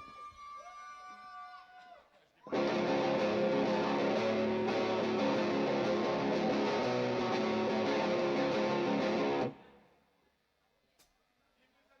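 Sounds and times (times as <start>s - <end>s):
electric guitar strumming chords: 2.5s - 9.6s.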